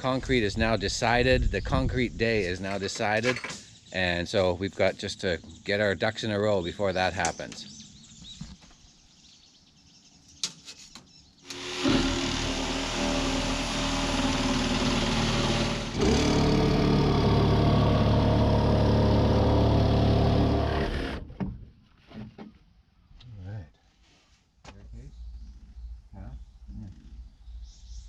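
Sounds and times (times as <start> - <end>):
small engine running: 11.5 - 21.2.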